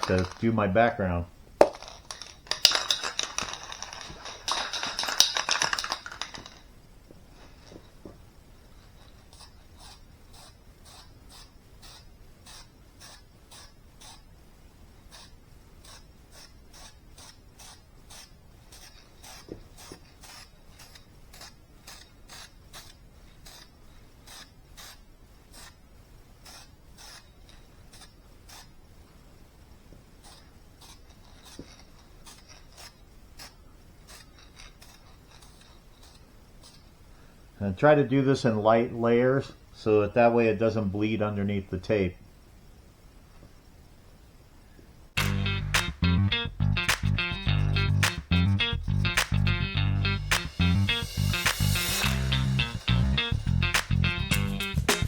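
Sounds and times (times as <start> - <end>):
spray paint can hissing: 50.2 - 55.0.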